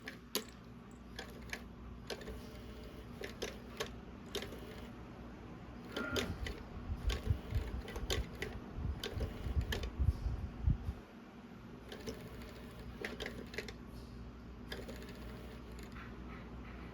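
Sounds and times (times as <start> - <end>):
cat toy clicking and rattling: 0.0 - 4.9, 5.9 - 10.0, 11.9 - 13.8, 14.7 - 16.1.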